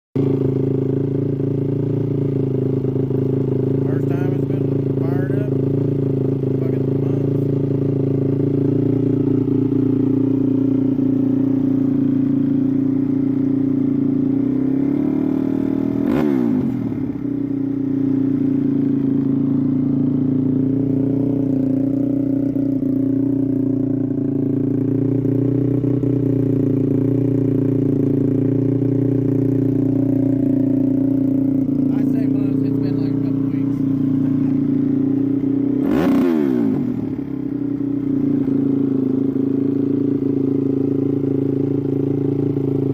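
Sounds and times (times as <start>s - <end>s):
quad bike engine running: 0.2s - 42.9s.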